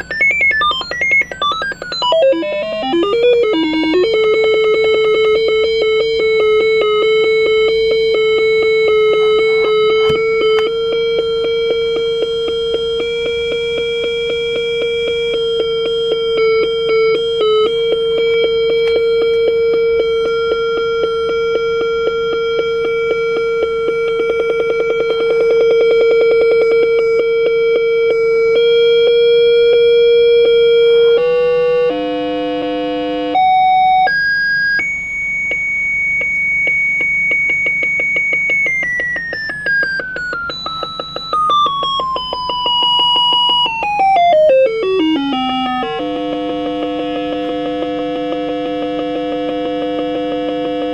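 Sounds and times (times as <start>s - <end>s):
high electronic beep: 0.0s - 31.3s, 33.4s - 48.6s
electronic tones jumping in pitch: 0.0s - 32.0s, 36.0s - 50.9s
buzzing tone with pulsing flutter: 0.0s - 33.8s, 44.7s - 50.9s.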